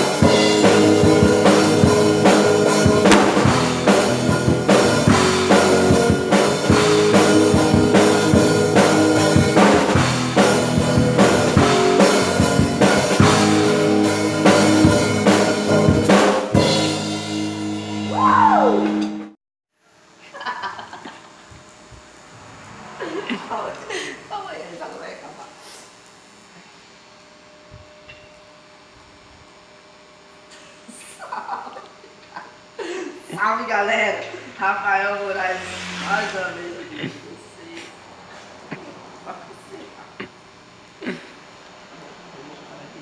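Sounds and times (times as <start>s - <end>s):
band playing worship song: 0.0s - 17.2s
drum kit hits: 0.2s - 18.0s
falling pitch slide: 3.0s - 4.9s.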